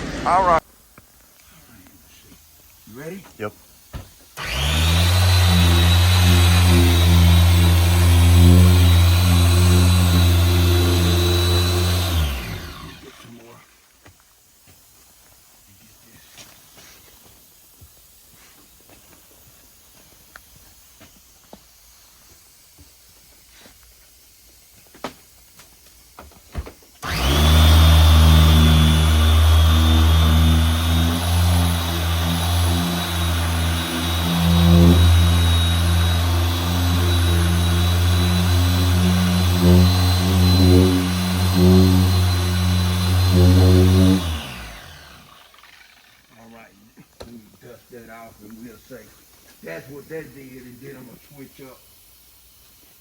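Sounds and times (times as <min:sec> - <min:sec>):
car polisher motor whining: 0:04.4 - 0:13.3, 0:27.0 - 0:46.1.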